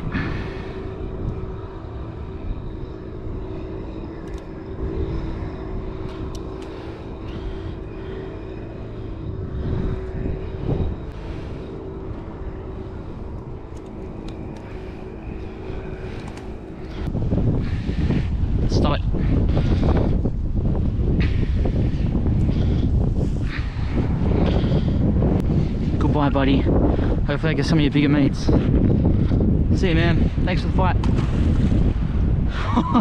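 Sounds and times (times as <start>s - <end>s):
distant engine drone: 0.0s - 33.0s
wind rumble on microphone: 0.0s - 33.0s
faint handling clicks: 13.3s - 14.8s.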